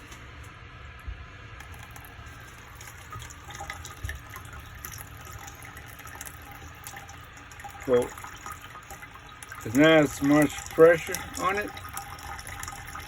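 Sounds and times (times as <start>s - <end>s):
water running from faucet: 1.6s - 13.0s.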